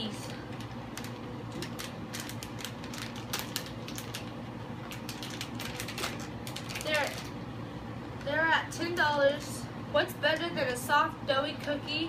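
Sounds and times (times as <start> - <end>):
plastic packaging crinkling: 0.5 - 7.4.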